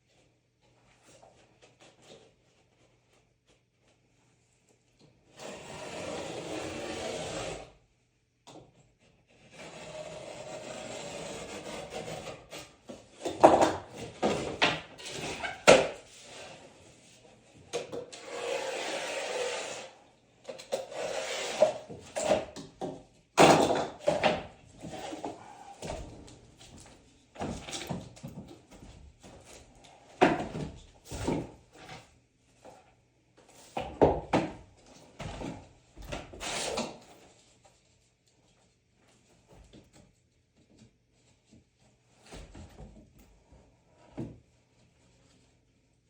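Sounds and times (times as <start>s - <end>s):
sawing wood: 9.4s - 12.7s, 18.2s - 20.0s, 20.9s - 21.9s.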